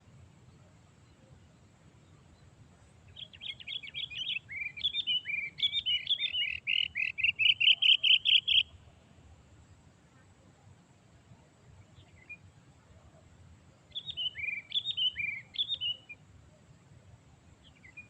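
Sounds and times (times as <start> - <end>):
bird chattering chirps: 3.2 - 8.7.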